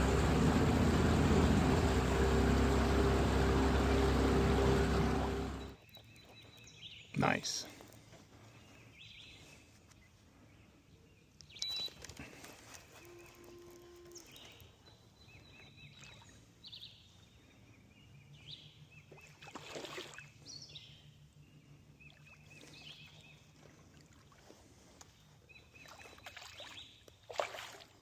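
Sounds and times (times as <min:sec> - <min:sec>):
birds singing: 0:05.0 - 0:07.6, 0:12.7 - 0:19.4.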